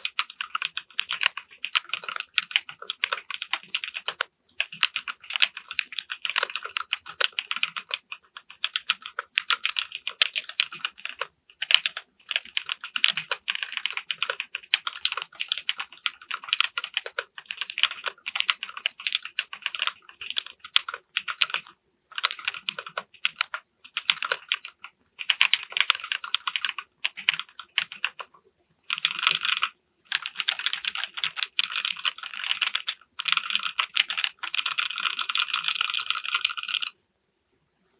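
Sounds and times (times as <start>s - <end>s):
mechanical keyboard typing: 0.0s - 37.0s.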